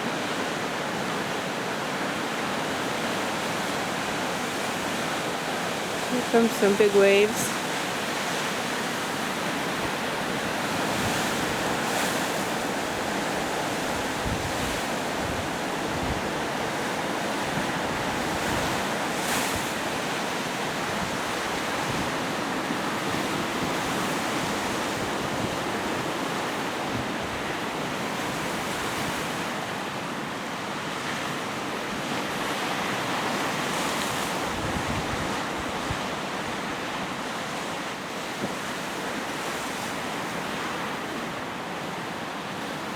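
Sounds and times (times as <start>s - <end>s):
waves breaking on shore: 0.0s - 42.9s
wind buffeting microphone: 9.7s - 18.9s, 34.5s - 36.6s.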